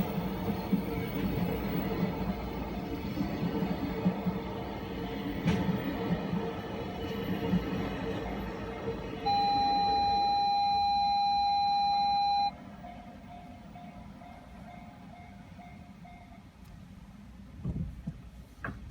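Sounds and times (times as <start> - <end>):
train rumble: 0.0 - 18.9
level crossing alarm ringing: 9.2 - 12.6
steady whistle note: 9.3 - 12.5.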